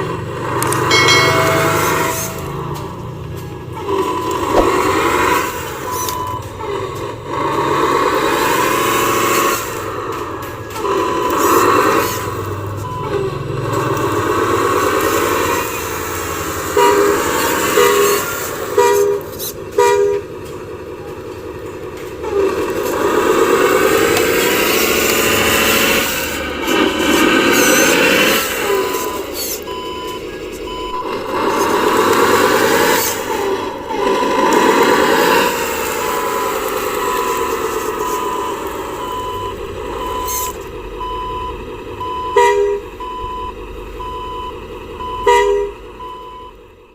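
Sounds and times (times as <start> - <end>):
simulated engine sound: 0.7 - 6.0
reversing beeper: 0.9 - 6.5, 27.5 - 46.6
toy truck horn two-tone blasts: 16.7 - 20.2, 42.1 - 43.3, 45.1 - 45.8.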